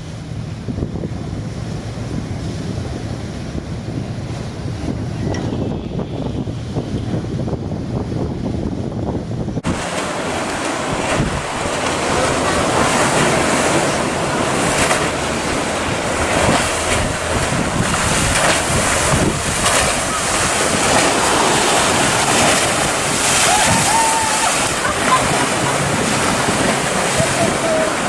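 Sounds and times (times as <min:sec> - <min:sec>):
wind buffeting microphone: 0:00.0 - 0:28.0
ocean surf breaking: 0:09.6 - 0:28.0.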